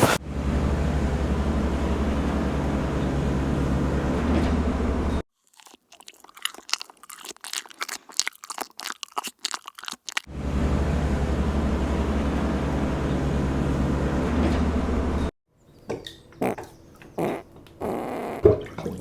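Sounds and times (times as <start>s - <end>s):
machine drone with low hum: 0.1s - 5.2s, 10.3s - 15.3s
crisp crunching and clicking: 5.4s - 10.3s.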